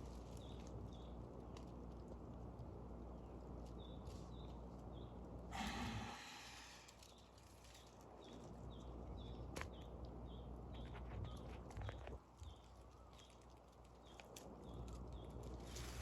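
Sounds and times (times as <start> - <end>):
lizard breathy rush of air: 5.5 - 6.9.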